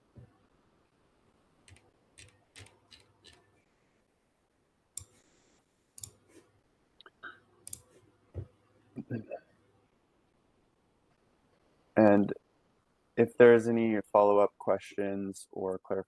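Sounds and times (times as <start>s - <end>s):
computer mouse and keyboard clicks: 1.7s - 3.5s.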